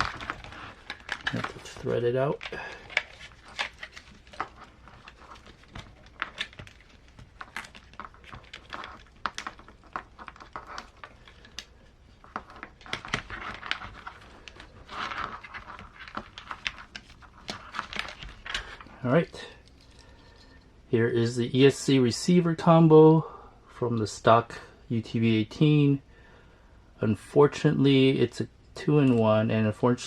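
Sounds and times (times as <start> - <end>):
plastic parts and wires rustling: 0.0 - 20.8.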